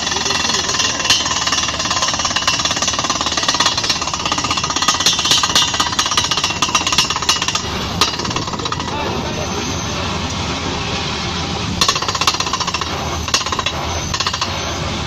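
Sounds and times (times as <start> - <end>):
pneumatic air hammer pounding: 0.0 - 9.0, 11.8 - 14.8.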